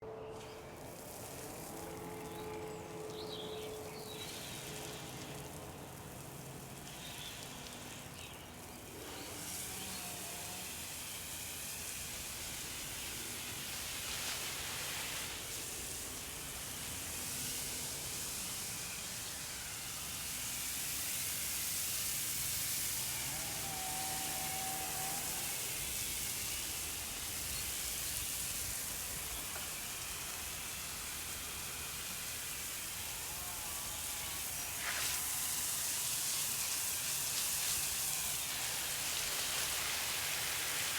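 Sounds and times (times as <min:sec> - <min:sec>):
garden hose spraying water: 0:00.4 - 0:40.9.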